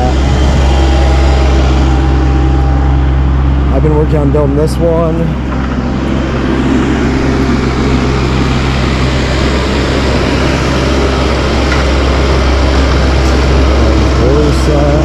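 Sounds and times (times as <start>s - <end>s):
diesel engine running: 0.0s - 15.0s.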